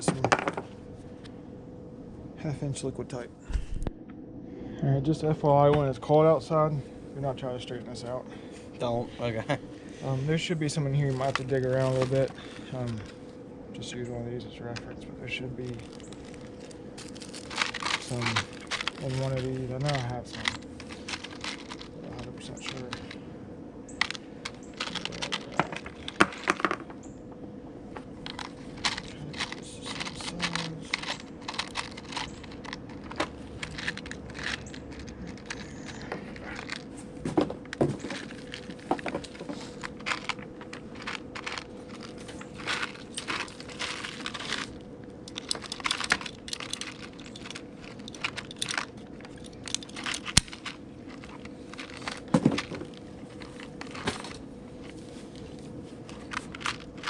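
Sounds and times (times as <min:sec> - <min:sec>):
faint steady hum: 0:00.0 - 0:57.0
screws rattling in plastic organizer: 0:17.0 - 0:21.9, 0:28.2 - 0:36.8, 0:37.9 - 0:54.4, 0:56.1 - 0:57.0.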